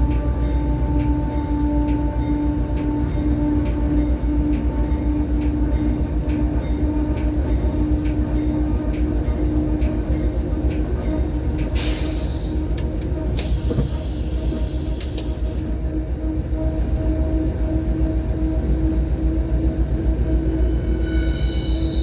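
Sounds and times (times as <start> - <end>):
train rumble: 0.0 - 22.0.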